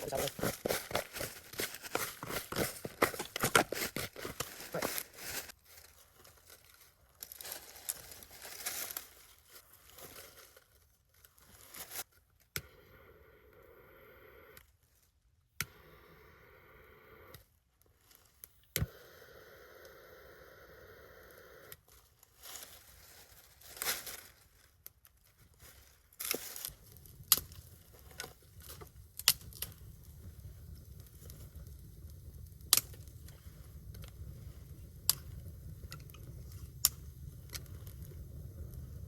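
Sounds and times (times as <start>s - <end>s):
footsteps crunching dry leaves: 0.0s - 10.3s.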